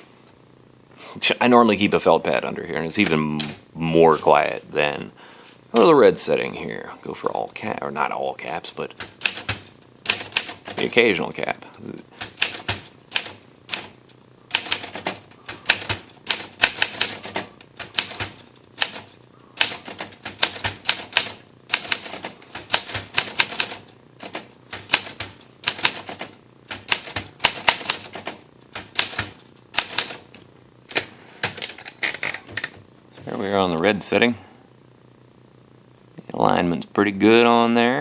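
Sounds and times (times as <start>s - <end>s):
manual typewriter typing: 8.9s - 11.0s, 12.2s - 30.3s, 30.9s - 32.8s.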